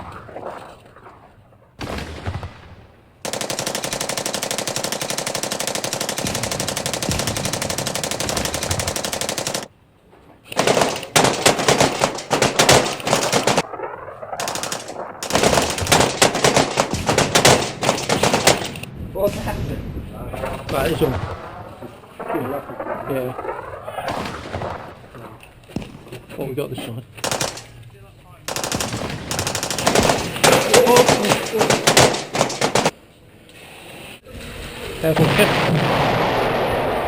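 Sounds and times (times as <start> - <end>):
airsoft gun full auto bursts: 3.3 - 9.7, 10.6 - 13.6, 14.4 - 18.9, 27.2 - 27.8, 28.5 - 33.0.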